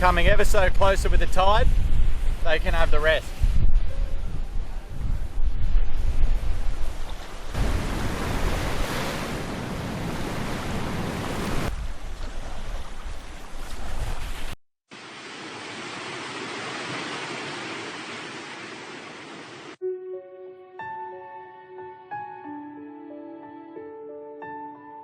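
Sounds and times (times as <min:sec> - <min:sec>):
wind buffeting microphone: 0:00.0 - 0:14.6
soft wash of waves: 0:04.5 - 0:19.8
surf washing on beach: 0:06.4 - 0:11.8.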